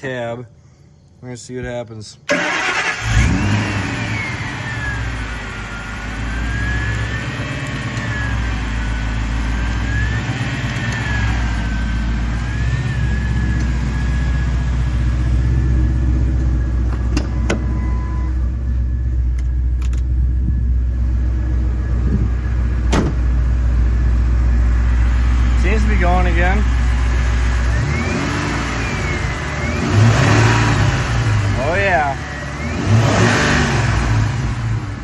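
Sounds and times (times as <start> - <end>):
car engine idling: 2.3 - 35.0
sharp clicks: 19.3 - 20.1.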